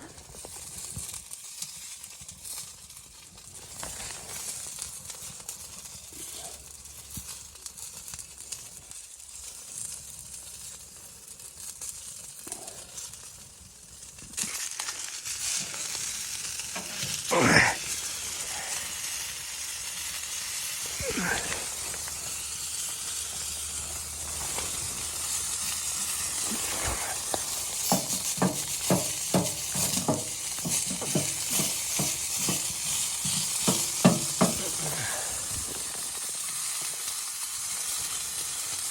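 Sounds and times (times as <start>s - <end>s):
sizzling hiss: 0.0s - 38.9s.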